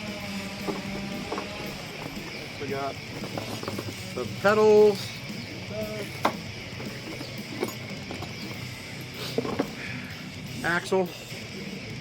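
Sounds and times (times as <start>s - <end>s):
bicycle parts knocking: 0.5s - 4.3s, 5.9s - 8.7s, 9.3s - 9.8s.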